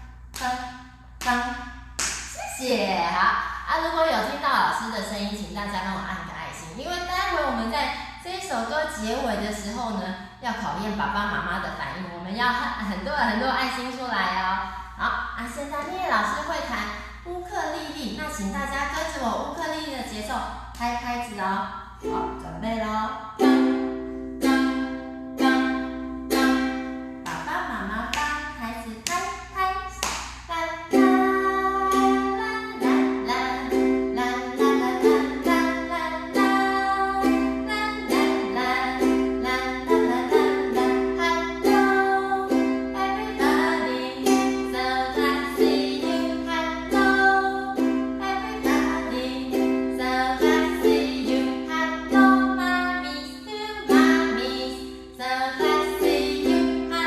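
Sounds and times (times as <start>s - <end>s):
ukulele strumming chords: 22.0s - 22.5s, 23.4s - 27.5s, 30.9s - 55.0s, 55.6s - 57.0s.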